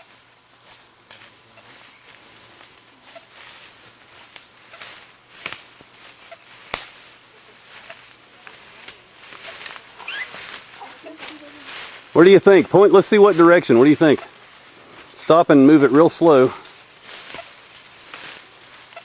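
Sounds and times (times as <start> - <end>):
footsteps rustling through leaves: 0.0 - 19.0
twigs snapping: 4.3 - 5.9, 6.6 - 7.0, 8.1 - 11.4.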